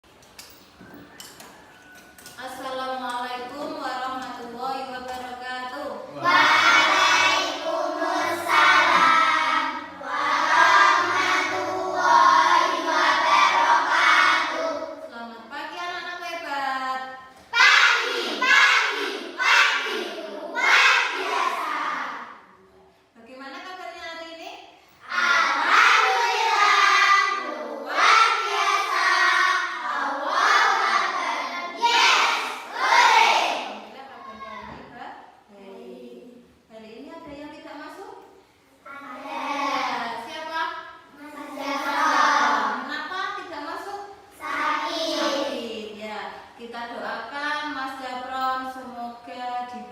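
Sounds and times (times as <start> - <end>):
children singing in unison: 6.1 - 15.0, 25.0 - 33.7, 41.4 - 42.8.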